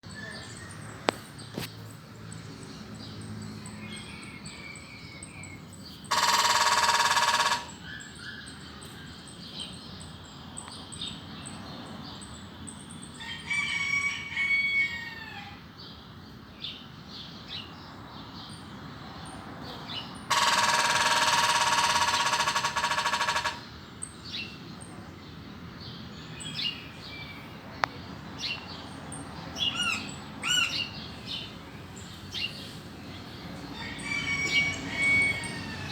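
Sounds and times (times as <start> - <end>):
woodpecker drumming on metal: 6.1 - 7.8, 20.3 - 23.7.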